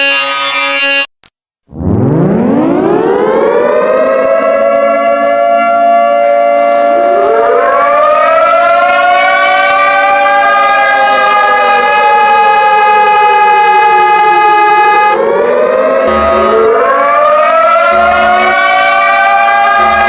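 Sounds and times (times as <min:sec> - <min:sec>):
second siren tone: 0:15.2 - 0:20.0
siren winding up: 0:16.0 - 0:20.0.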